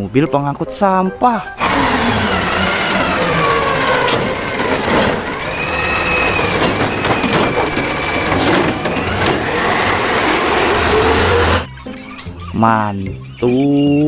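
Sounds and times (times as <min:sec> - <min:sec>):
truck engine running: 0:01.6 - 0:11.7.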